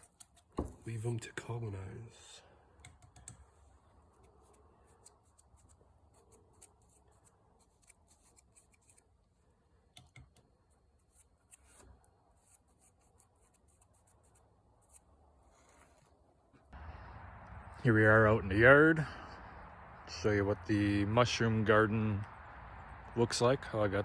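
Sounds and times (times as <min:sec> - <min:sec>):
faint scratching and rubbing: 0:03.5 - 0:09.6, 0:10.6 - 0:16.8.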